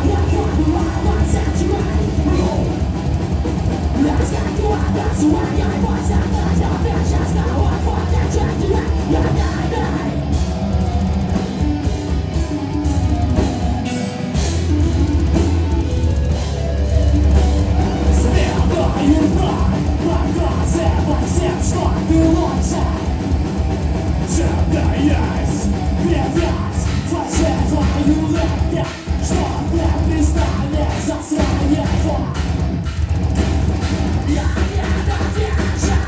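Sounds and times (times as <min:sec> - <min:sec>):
person singing: 0:00.0 - 0:03.0, 0:03.9 - 0:12.6, 0:17.2 - 0:32.5, 0:34.3 - 0:36.0
bass guitar: 0:00.0 - 0:36.0
drum kit: 0:00.0 - 0:36.0
guitar: 0:00.0 - 0:36.0.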